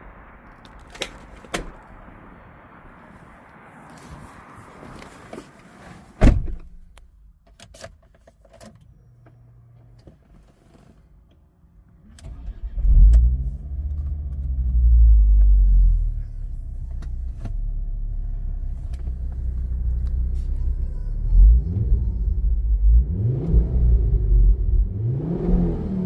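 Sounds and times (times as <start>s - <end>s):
car engine starting and idling: 0.0s - 26.0s
loud thump: 6.2s - 6.8s.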